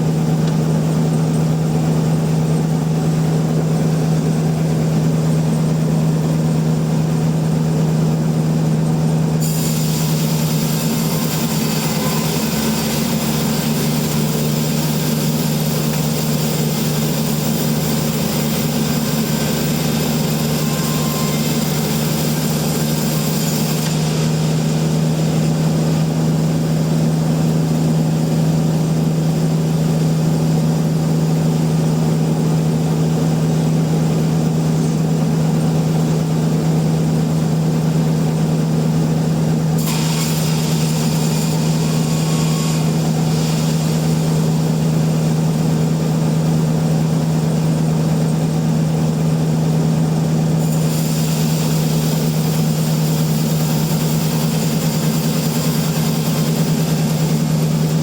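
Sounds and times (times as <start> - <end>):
sawmill machinery hum: 0.0 - 58.0
saw cutting log hiss: 9.4 - 26.2, 39.8 - 45.8, 50.6 - 58.0.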